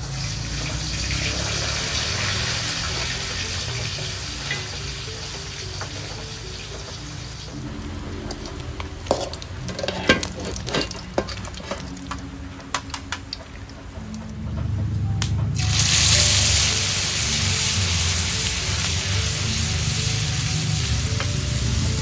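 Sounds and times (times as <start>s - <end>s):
food sizzling in hot oil: 0.0s - 12.3s, 15.6s - 22.0s
background music: 0.1s - 22.0s
utensils clinking: 3.6s - 16.2s.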